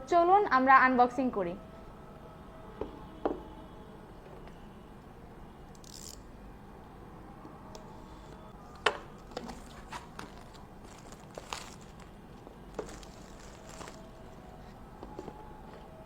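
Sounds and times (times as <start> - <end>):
packaging rustling: 9.2 - 15.9.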